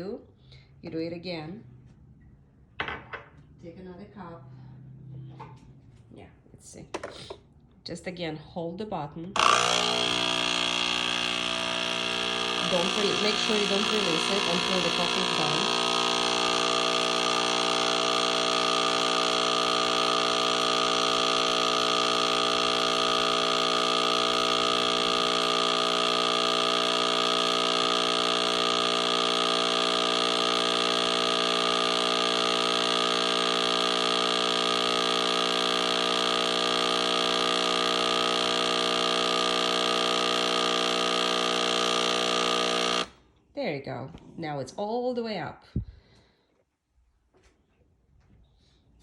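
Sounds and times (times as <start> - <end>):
espresso machine pump humming: 9.3 - 43.2.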